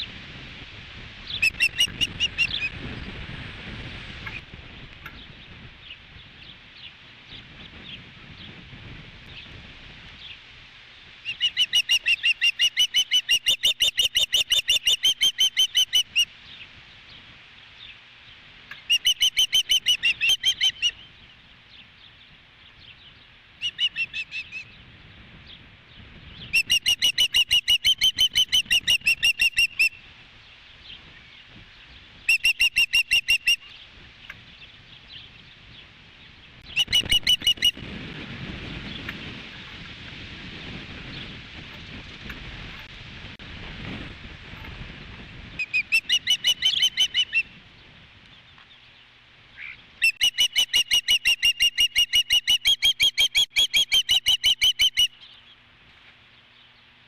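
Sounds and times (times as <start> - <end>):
osprey whistled chirps: 1.3 - 2.8, 11.3 - 16.3, 18.9 - 21.1, 23.6 - 24.8, 26.4 - 30.0, 32.3 - 33.8, 36.7 - 37.8, 45.6 - 47.6, 49.6 - 55.4.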